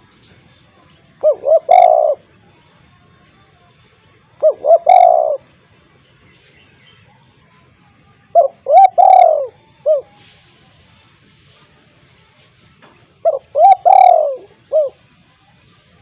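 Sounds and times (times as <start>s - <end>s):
dove cooing: 1.2s - 2.3s, 4.4s - 5.5s, 8.3s - 10.3s, 13.2s - 15.1s.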